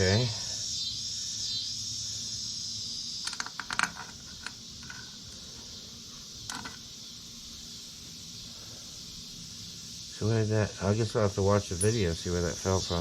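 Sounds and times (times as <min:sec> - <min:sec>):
high insect drone: 0:00.0 - 0:13.0
small part clattering: 0:03.2 - 0:05.6, 0:06.4 - 0:06.9.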